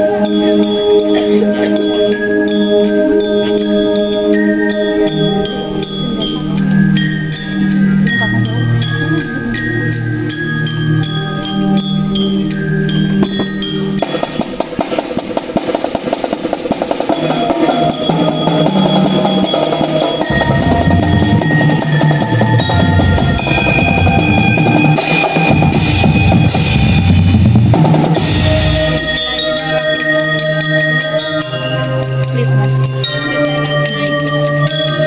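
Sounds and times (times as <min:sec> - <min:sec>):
snare drum roll: 0:14.0 - 0:19.3
high pitched melody notes: 0:17.0 - 0:35.0.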